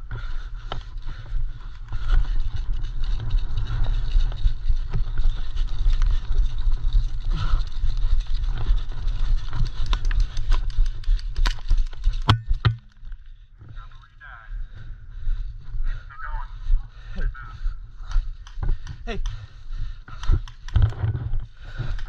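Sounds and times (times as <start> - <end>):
sharp clicks and knocks: 9.6 - 13.0, 20.1 - 21.3.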